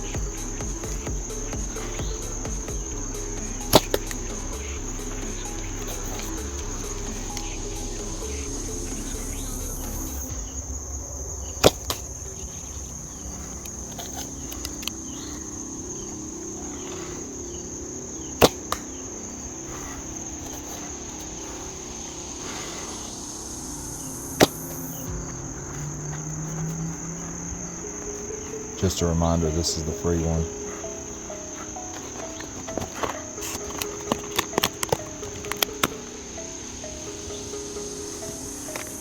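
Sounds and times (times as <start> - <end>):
slingbow shot snap: 0.0 - 10.2, 24.3 - 25.7
crickets trilling: 0.0 - 39.0.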